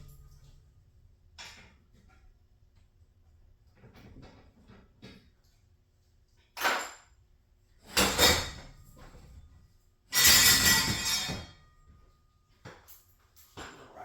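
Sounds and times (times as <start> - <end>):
metallic clattering and scraping: 10.1 - 11.8.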